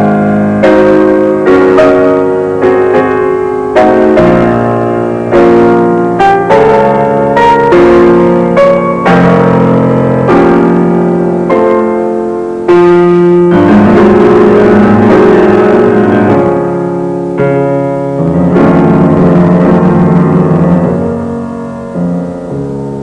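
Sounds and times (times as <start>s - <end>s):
slow piano chords: 0.0s - 23.0s.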